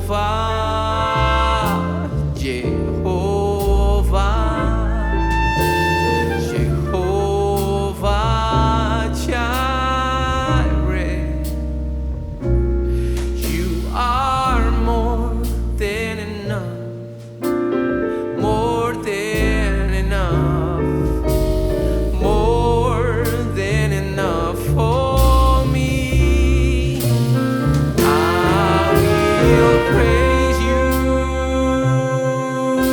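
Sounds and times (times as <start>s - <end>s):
double bass: 0.0s - 32.9s
piano: 0.0s - 32.9s
drums: 1.6s - 32.1s, 32.7s - 32.9s
vibrato melody line: 5.2s - 7.9s.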